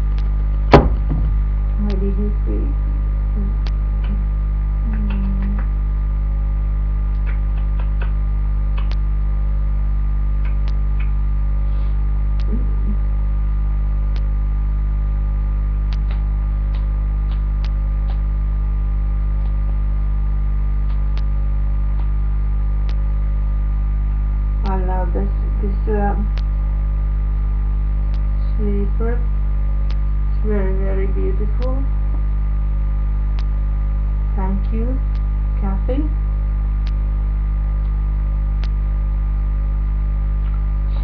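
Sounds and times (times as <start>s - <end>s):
electrical mains hum: 0.0s - 41.0s
small clicks and ticks: 7.1s - 8.2s, 8.8s - 9.1s.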